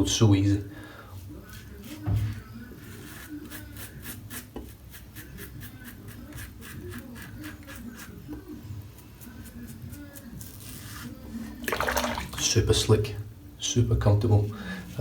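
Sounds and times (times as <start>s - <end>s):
razor rasping on lathered skin: 1.5s - 8.2s.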